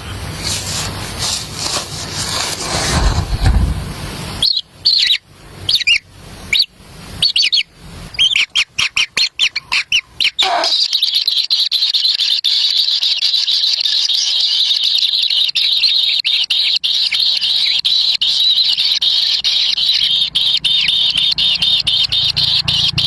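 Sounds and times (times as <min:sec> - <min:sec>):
nestlings squealing chatter: 0:08.2 - 0:13.7.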